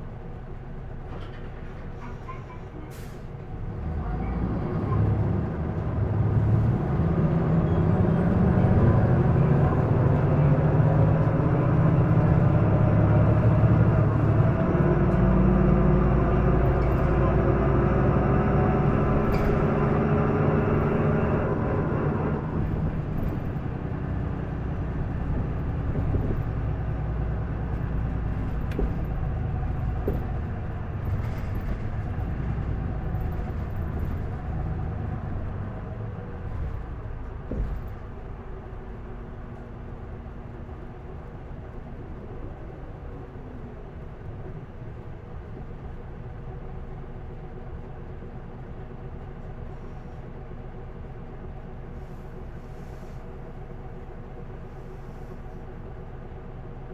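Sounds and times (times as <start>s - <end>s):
bus diesel engine: 0.0s - 56.9s
light knocks and rattles: 22.5s - 35.7s, 36.4s - 38.4s.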